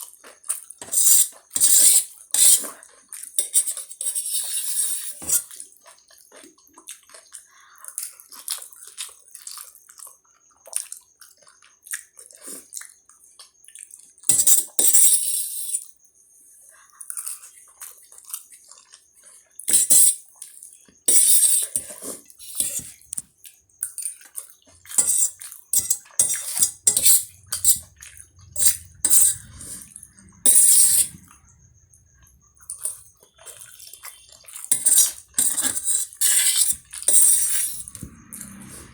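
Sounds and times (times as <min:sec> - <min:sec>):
cutlery clinking on a bowl: 0:00.8 - 0:02.8, 0:03.4 - 0:05.6, 0:14.3 - 0:15.9, 0:19.7 - 0:20.2, 0:21.1 - 0:23.1, 0:23.8 - 0:29.7, 0:32.7 - 0:38.9
chewing and mouth clicks: 0:05.4 - 0:14.3, 0:16.9 - 0:19.7, 0:21.9 - 0:30.4, 0:31.1 - 0:37.2
noodle slurping: 0:21.1 - 0:23.2, 0:24.3 - 0:38.9.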